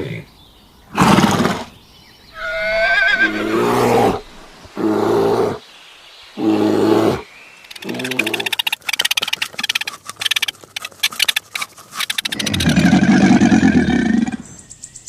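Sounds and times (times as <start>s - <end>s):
horse whinnying: 2.4s - 4.4s
fast run of clicks: 7.6s - 12.8s.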